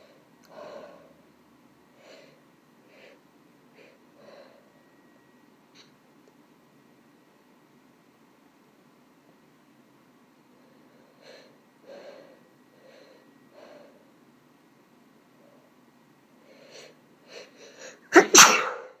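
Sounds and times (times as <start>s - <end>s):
woman breathing softly: 0.0s - 1.2s, 1.9s - 5.0s, 10.5s - 14.2s, 16.4s - 18.1s
woman sneezing: 18.0s - 19.0s.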